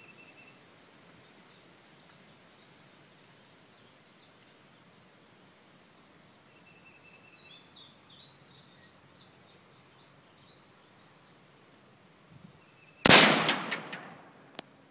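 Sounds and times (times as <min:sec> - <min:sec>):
songbird chirping: 0:00.0 - 0:05.2, 0:05.8 - 0:11.8, 0:12.4 - 0:13.1
rifle shot: 0:13.0 - 0:14.4.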